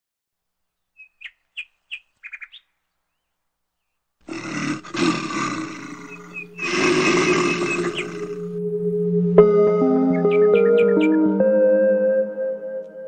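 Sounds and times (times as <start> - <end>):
small bird chirping and trilling: 0.8 - 4.0, 10.3 - 11.2.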